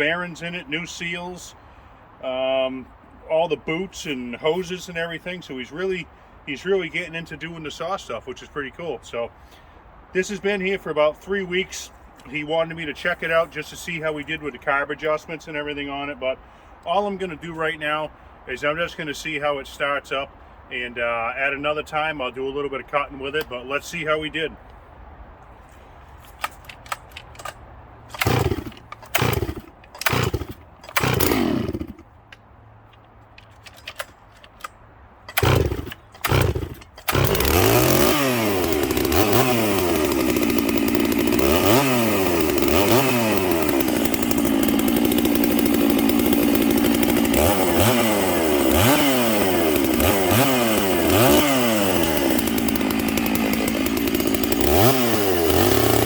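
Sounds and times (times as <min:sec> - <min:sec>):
chainsaw engine revving: 0:28.1 - 0:32.0, 0:35.3 - 0:56.0.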